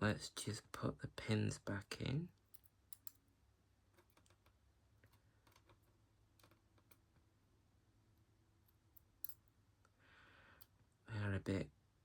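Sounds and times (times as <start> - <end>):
lock pins clicking: 2.5 - 3.2, 8.9 - 9.5.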